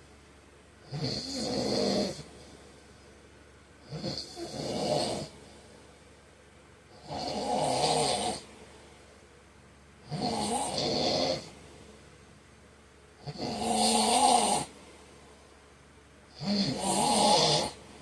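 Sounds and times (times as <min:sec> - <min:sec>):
man snoring: 0:00.8 - 0:02.5, 0:03.8 - 0:05.4, 0:06.9 - 0:08.5, 0:10.0 - 0:11.6, 0:13.2 - 0:14.8, 0:16.3 - 0:17.9.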